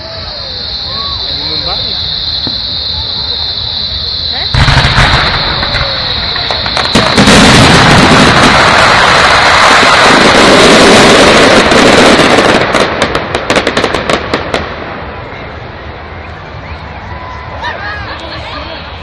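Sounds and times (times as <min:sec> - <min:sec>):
fireworks crackling: 0:00.0 - 0:16.6
sharp firework cracks: 0:04.4 - 0:15.2.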